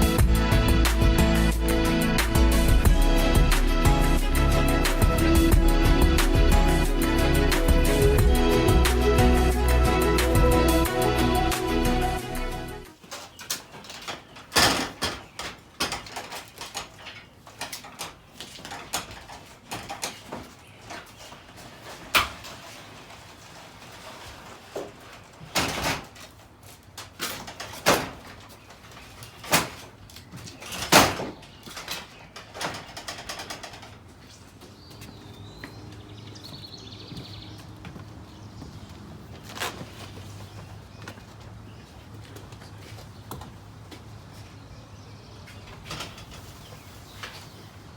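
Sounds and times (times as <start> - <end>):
background music: 0.0 - 12.9
knocks and clanks of hand work: 13.5 - 21.1.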